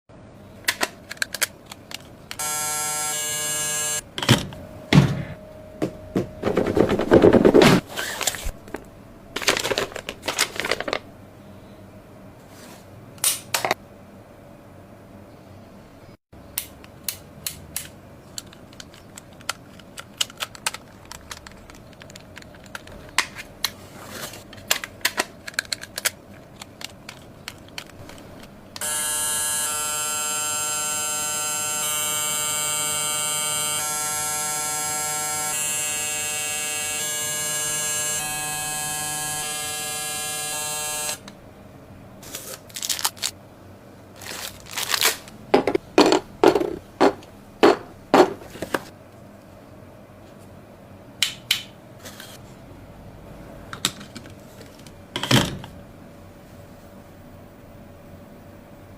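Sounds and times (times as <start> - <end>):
hair clipper buzzing: 2.4 - 4.0, 28.8 - 41.3.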